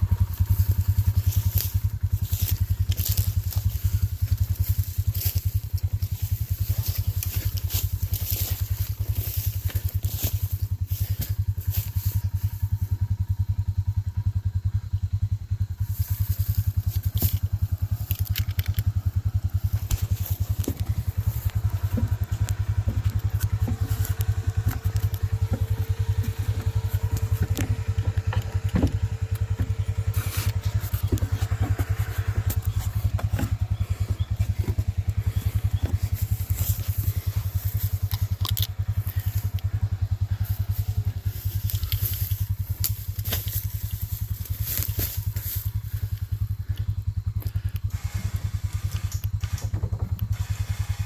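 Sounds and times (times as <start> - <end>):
small engine idling: 0.0 - 51.0
scattered clicks and knocks: 16.8 - 39.7, 48.8 - 50.6.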